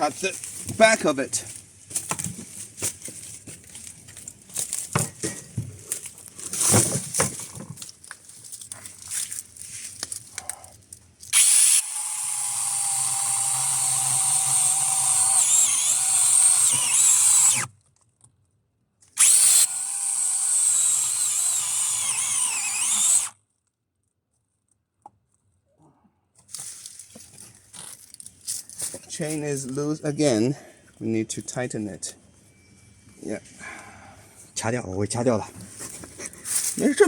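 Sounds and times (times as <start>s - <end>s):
chainsaw cutting wood: 11.3s - 17.7s, 19.2s - 23.4s.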